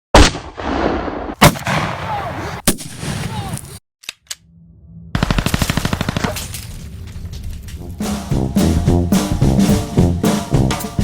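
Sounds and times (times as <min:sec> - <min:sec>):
gunshots with rumbling echo: 0:00.1 - 0:03.2.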